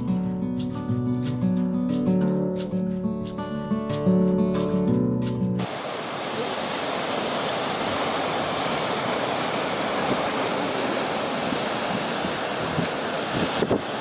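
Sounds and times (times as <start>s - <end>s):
waves breaking: 5.6s - 14.0s.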